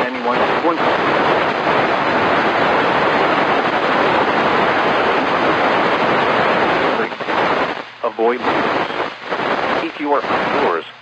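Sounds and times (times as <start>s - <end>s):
synthesized warning voice: 0.0s - 1.0s, 8.0s - 9.1s, 9.8s - 10.9s
loud static hiss: 0.0s - 11.0s.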